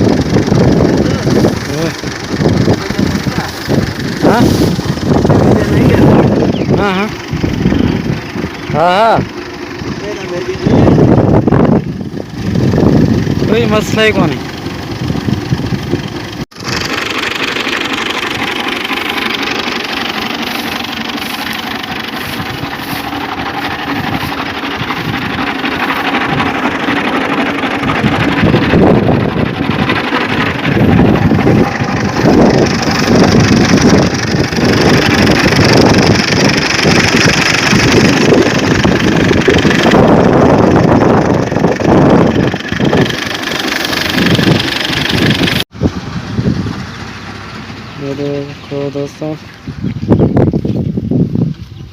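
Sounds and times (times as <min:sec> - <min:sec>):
harvester engine running: 0:00.0 - 0:51.9.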